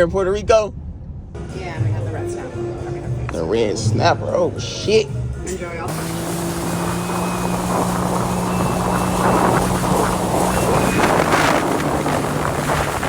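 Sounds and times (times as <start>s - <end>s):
jet ski engine running: 5.9s - 13.0s
rushing wind: 5.9s - 13.0s
water noise: 5.9s - 13.0s.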